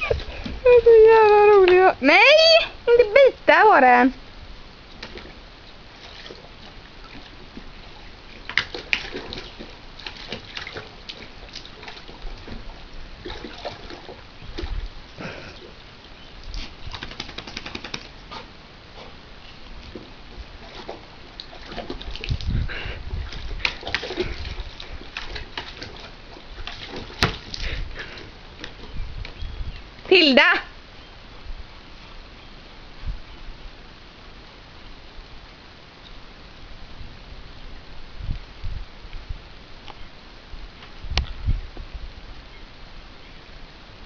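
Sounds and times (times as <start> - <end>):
dog splashing water: 5.1 - 19.2, 19.8 - 28.8.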